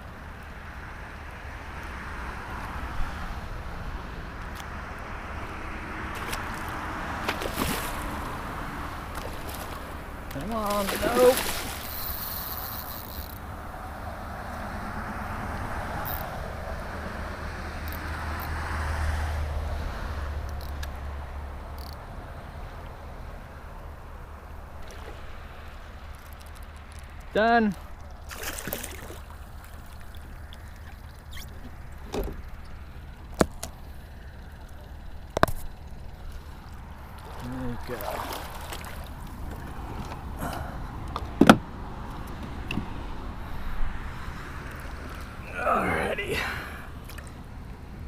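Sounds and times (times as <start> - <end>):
water sloshing against kayak hull: 6.1 - 12.8, 28.0 - 41.6
sharp clicks and knocks: 35.3 - 35.8.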